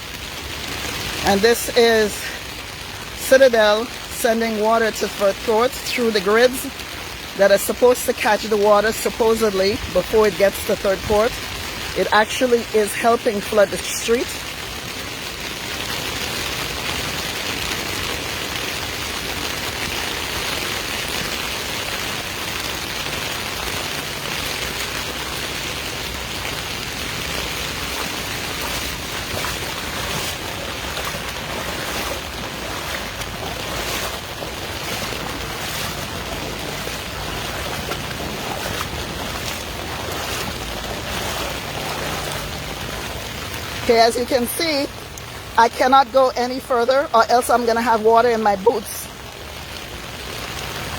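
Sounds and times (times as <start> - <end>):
floodwater rushing: 0.0 - 50.9.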